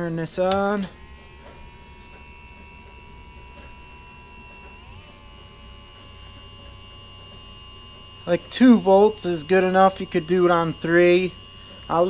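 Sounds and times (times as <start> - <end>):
electric motor whining: 0.0 - 12.0.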